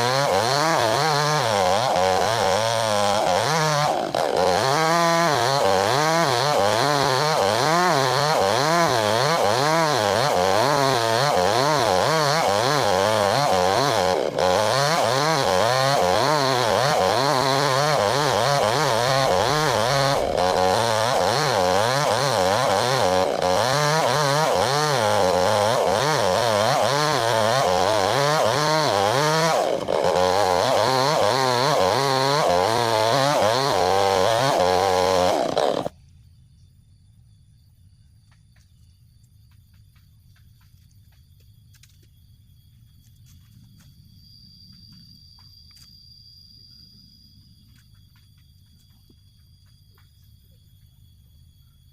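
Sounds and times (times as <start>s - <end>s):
chainsaw cutting a log: 0.0s - 35.9s.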